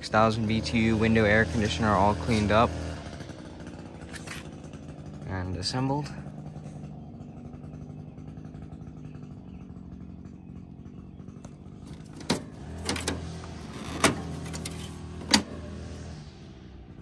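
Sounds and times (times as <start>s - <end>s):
low engine hum: 0.0s - 17.0s
sharp clicks and knocks: 11.9s - 15.6s.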